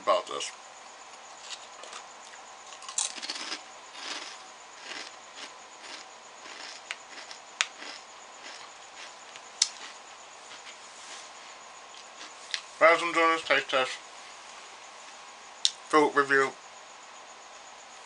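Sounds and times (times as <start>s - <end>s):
potato chips crinkling and crunching: 2.7s - 10.0s.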